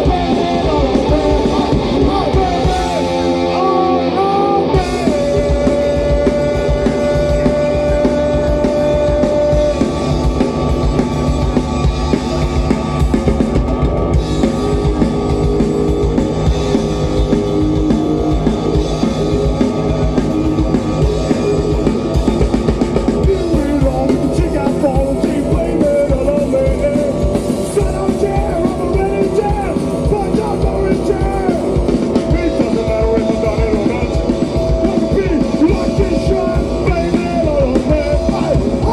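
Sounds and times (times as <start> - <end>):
person singing: 0.0 - 10.1, 23.2 - 38.9
driving drum kit: 0.0 - 38.9
electric guitars: 0.0 - 38.9.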